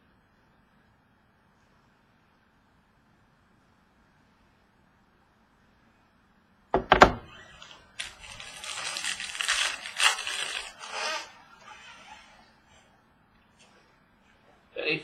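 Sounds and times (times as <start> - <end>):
sharp knocks: 6.8 - 7.3
wrapping crinkling and tearing: 7.6 - 12.3.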